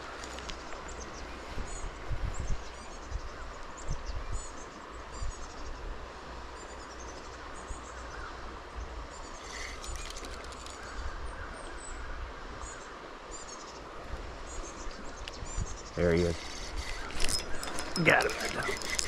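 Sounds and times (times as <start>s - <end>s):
outdoor background hiss: 0.0s - 19.0s
small birds chirping: 8.8s - 11.1s, 12.8s - 19.0s.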